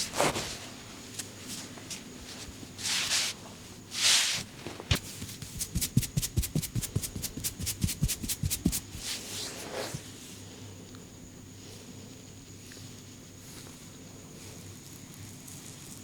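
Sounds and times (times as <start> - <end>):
hands rubbing swishes: 2.8 - 10.0
percussive massage strikes: 4.9 - 9.0.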